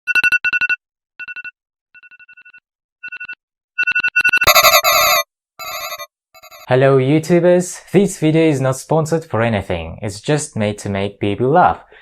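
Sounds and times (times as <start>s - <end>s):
electronic alarm beeps: 4.5s - 6.7s
loud layered alarm tone: 4.5s - 6.7s.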